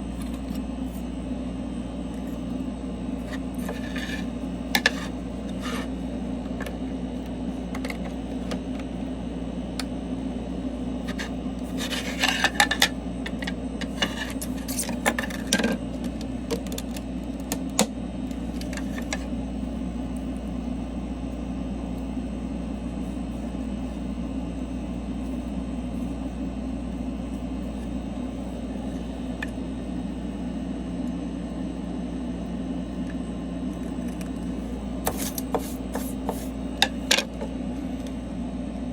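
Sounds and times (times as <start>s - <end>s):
workbench machinery humming: 0.0s - 38.9s
tool scrapes and clicks: 3.2s - 6.0s, 11.1s - 15.6s, 35.0s - 37.5s.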